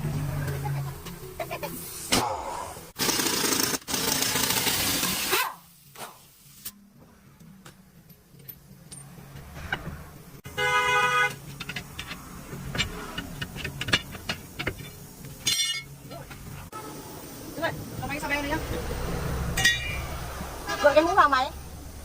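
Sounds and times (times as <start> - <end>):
vehicle horn honk: 10.5 - 11.4, 20.6 - 21.2.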